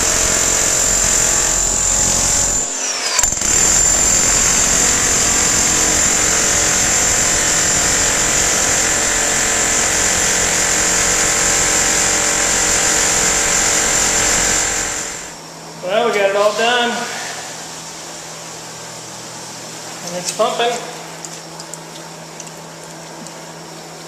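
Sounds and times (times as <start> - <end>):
demolition hammer chiselling concrete: 0.0 - 15.4.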